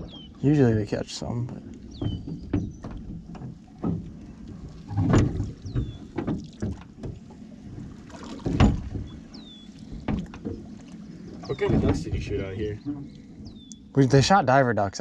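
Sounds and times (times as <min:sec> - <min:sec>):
knocks and thumps on boat: 0:00.0 - 0:14.4
low watery rumble: 0:00.0 - 0:15.0.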